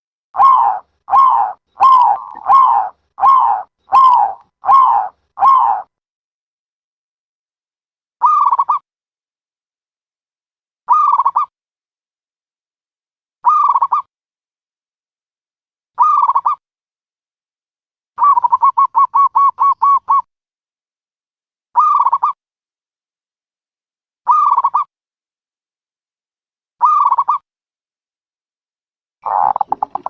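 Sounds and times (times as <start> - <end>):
dove cooing calls: 0.4 - 5.9, 29.2 - 30.0.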